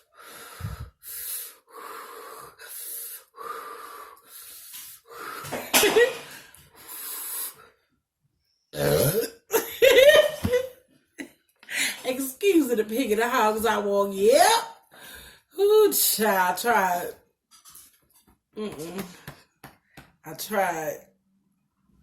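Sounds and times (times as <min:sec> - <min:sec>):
woman breathing hard and fast: 0:00.0 - 0:07.8, 0:11.6 - 0:12.0, 0:14.9 - 0:15.6
woman gasping: 0:00.3 - 0:02.8, 0:11.7 - 0:12.1.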